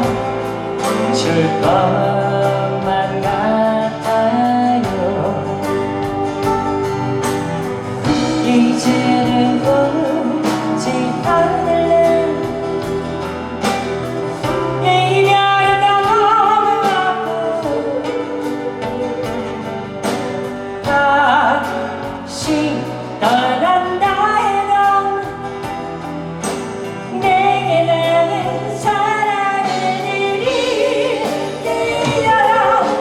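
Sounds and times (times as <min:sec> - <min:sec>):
bending lead melody: 0:00.0 - 0:33.0
live rock band: 0:00.0 - 0:33.0
drum beat: 0:06.0 - 0:21.3, 0:29.8 - 0:33.0.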